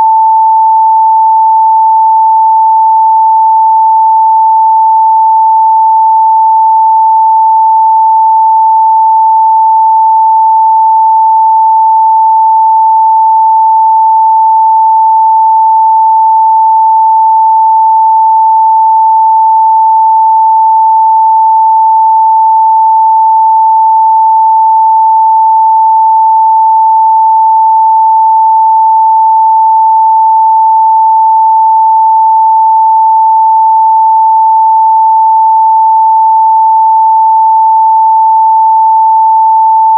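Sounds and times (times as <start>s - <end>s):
sine wave test tone: 0.0s - 39.9s.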